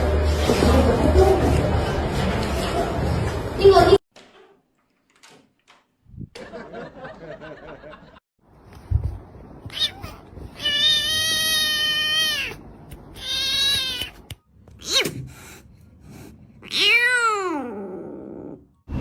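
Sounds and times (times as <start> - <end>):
cat meowing: 9.7 - 14.2, 16.6 - 18.1.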